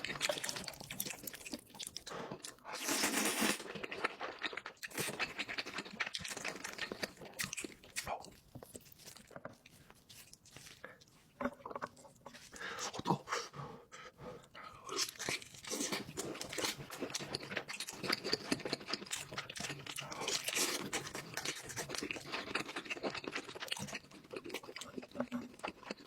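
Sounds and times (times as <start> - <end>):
person chewing and crunching food: 0.0 - 13.6, 14.4 - 26.0.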